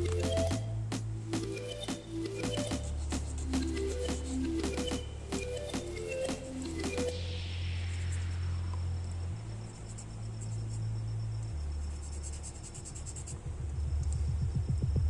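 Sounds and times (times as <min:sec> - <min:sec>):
low sustained bass notes: 0:00.0 - 0:01.8, 0:07.1 - 0:12.5
pulsing beat: 0:00.0 - 0:09.0, 0:13.4 - 0:15.0.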